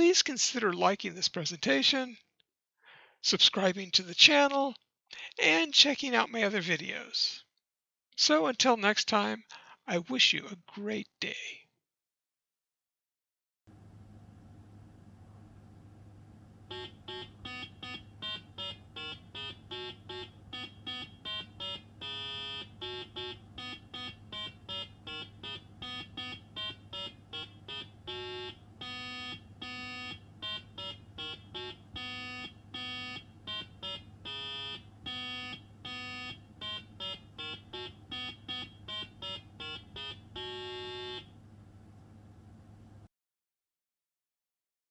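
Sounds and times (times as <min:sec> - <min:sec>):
electronic piano beeping notes: 0:16.7 - 0:41.2.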